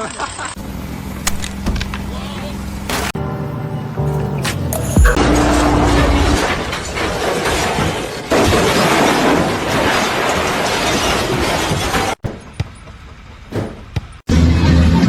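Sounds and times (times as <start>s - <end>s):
loud crash of breaking: 5.2s - 12.5s.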